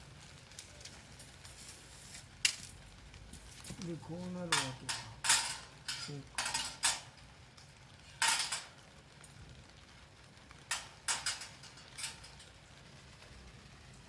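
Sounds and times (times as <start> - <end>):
metal parts clinking and clattering: 4.5 - 7.1, 8.2 - 8.7, 10.7 - 12.5.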